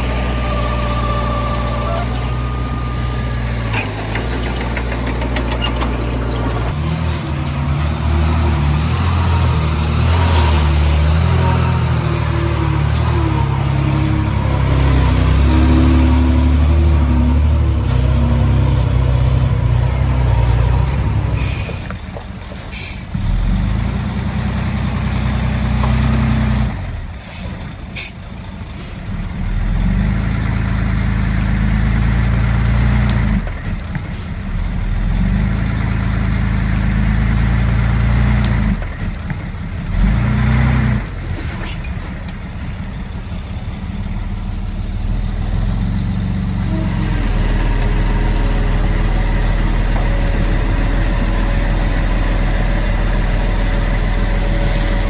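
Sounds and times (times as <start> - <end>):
diesel earthmoving machinery: 0.0 - 55.0
sharp knocks and clanks: 3.6 - 8.2.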